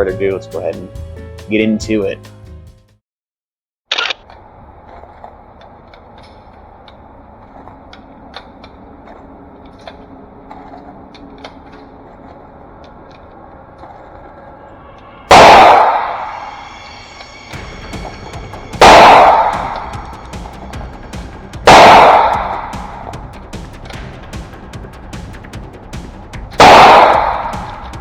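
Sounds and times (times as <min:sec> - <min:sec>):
rifle shot with ringing decay: 0:15.3 - 0:16.5, 0:18.8 - 0:20.1, 0:21.7 - 0:23.1, 0:26.6 - 0:27.9.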